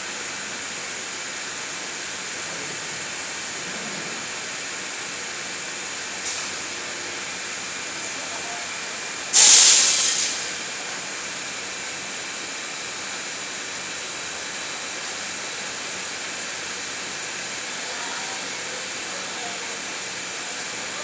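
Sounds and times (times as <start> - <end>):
machinery hissing: 2.2 - 11.6
sharp hiss of released air: 9.3 - 10.6.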